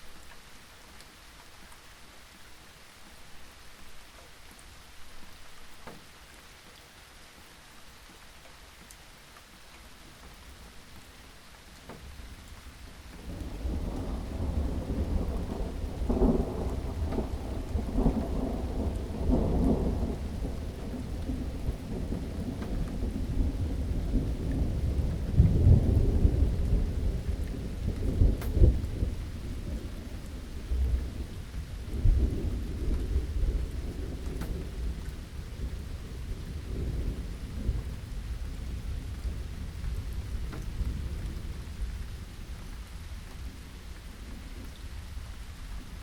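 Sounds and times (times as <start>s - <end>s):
steady rain: 0.0s - 46.0s
thunder rumbling: 13.2s - 46.0s.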